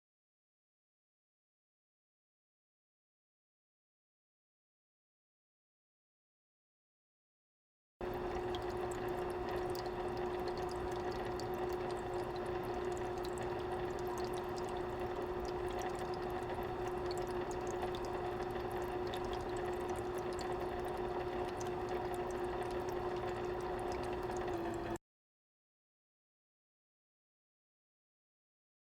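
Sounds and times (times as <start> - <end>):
filter motor hum: 8.0 - 25.0
water pouring and trickling: 8.0 - 25.0.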